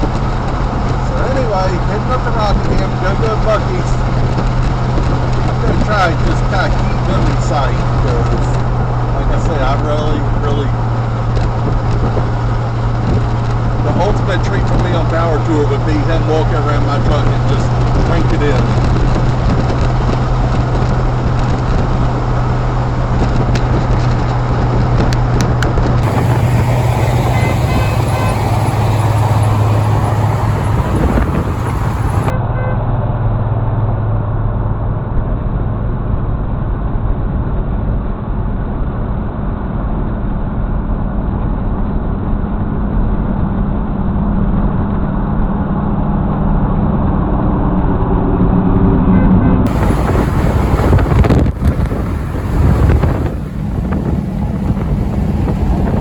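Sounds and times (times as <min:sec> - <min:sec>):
road and tyre noise: 0:00.0 - 0:56.0
low engine drone: 0:05.3 - 0:32.3, 0:45.1 - 0:56.0.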